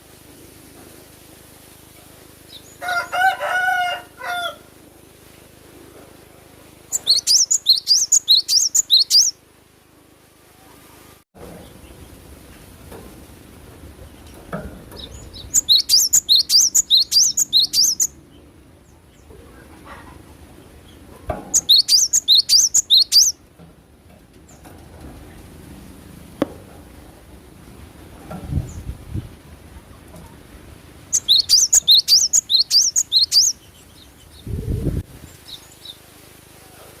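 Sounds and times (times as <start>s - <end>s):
bird singing high rising notes: 6.9s - 9.4s, 15.0s - 18.5s, 21.5s - 23.4s, 31.1s - 36.0s.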